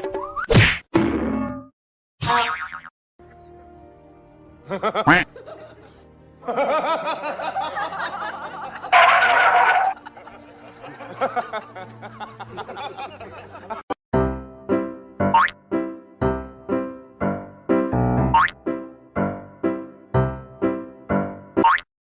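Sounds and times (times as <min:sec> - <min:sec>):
background music: 0:03.2 - 0:21.8
people laughing: 0:04.6 - 0:13.9.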